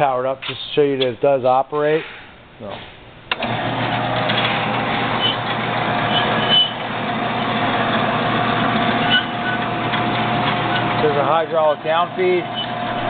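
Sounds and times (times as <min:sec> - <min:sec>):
metal-cutting bandsaw running: 0:03.4 - 0:13.0
high squeaks: 0:05.1 - 0:06.9, 0:08.9 - 0:09.8, 0:10.4 - 0:13.0.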